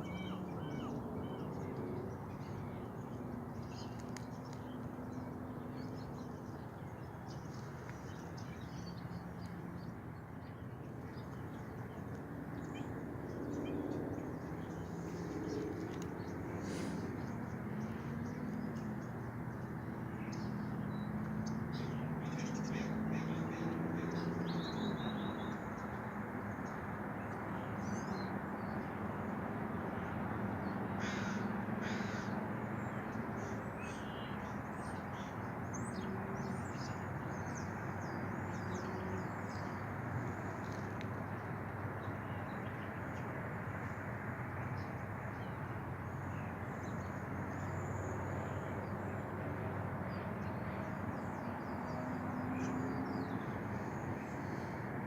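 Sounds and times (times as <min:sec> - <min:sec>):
outdoor background rush: 0:00.0 - 0:55.0
birds calling: 0:10.6 - 0:18.9, 0:31.0 - 0:32.4
harsh cawing calls: 0:31.0 - 0:32.4.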